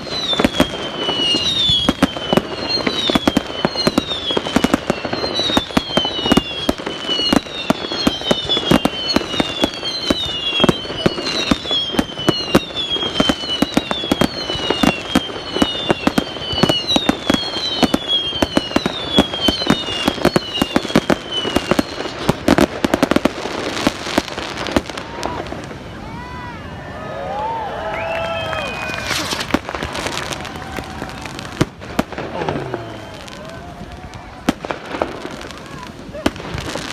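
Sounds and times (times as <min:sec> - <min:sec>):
fireworks whistling: 0:00.0 - 0:26.4, 0:27.3 - 0:36.9
fireworks bangs and crackles: 0:00.0 - 0:36.9.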